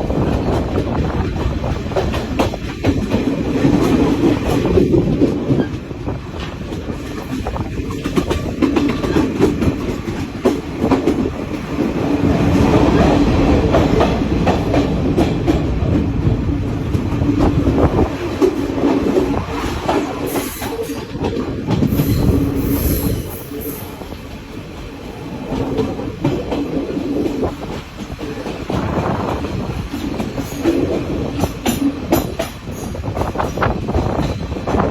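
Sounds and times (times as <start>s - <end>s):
train rumbling along track: 0.0s - 34.9s
wheels clicking over rail joints: 0.1s - 23.6s
high-pitched wheel squeals: 21.9s - 23.9s.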